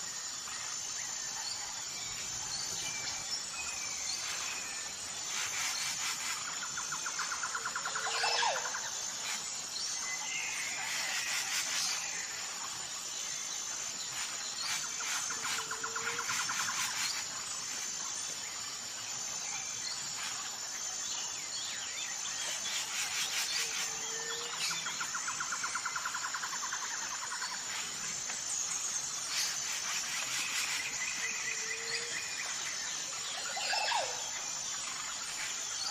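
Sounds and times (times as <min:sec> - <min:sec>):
background hiss: 0:00.0 - 0:35.9.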